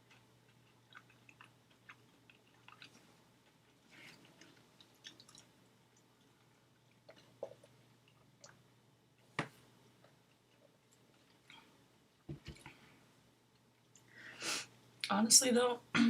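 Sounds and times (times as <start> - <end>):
wet chewing mouth clicks: 0.0 - 6.2.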